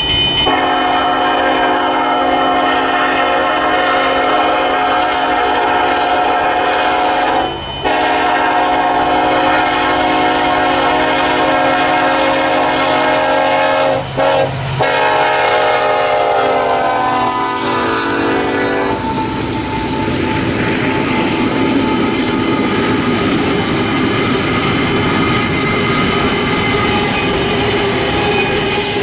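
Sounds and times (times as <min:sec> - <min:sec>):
locomotive air horn blasts: 0:00.4 - 0:19.4.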